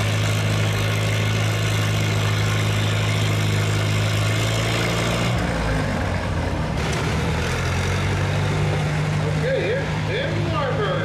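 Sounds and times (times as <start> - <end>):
tractor engine idling: 5.5 - 11.0.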